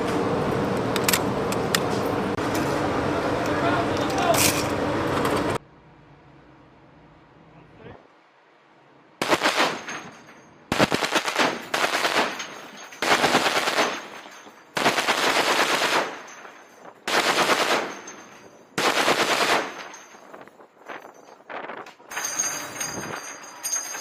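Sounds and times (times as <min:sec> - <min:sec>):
machine gun bursts: 0:09.2 - 0:10.1, 0:10.7 - 0:20.2.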